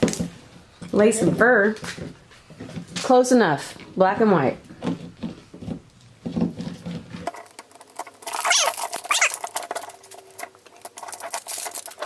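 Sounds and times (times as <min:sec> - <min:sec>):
plastic packaging crinkling: 0:07.3 - 0:12.0.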